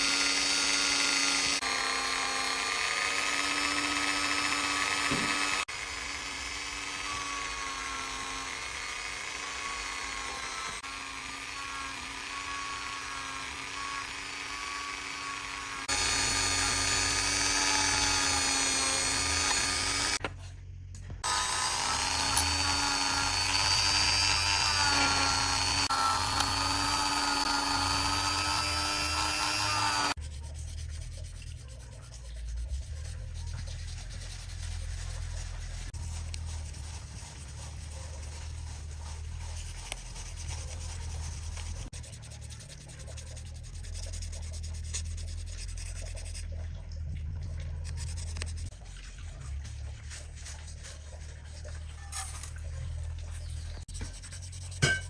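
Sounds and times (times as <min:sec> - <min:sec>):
rotary tool whining: 0:00.0 - 0:20.3, 0:21.2 - 0:30.2
hand polishing rubbing and scraping: 0:11.6 - 0:20.2, 0:21.2 - 0:46.5, 0:47.9 - 0:55.0.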